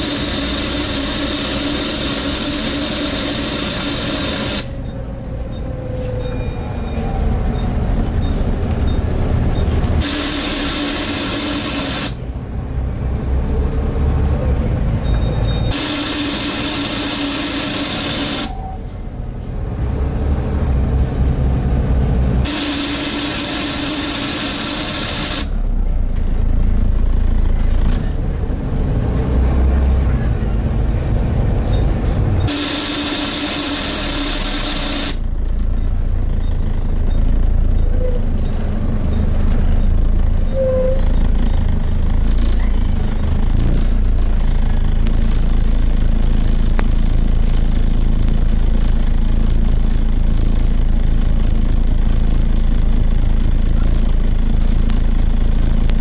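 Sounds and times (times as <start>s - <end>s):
loud air hissing bursts: 0.0s - 4.7s, 10.0s - 12.2s, 15.7s - 18.5s, 22.4s - 25.5s, 32.5s - 35.2s
bus engine rumble: 0.0s - 56.0s.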